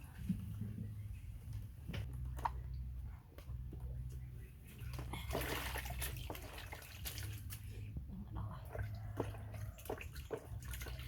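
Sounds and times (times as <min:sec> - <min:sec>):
water splashing in a tub: 0:04.9 - 0:11.0.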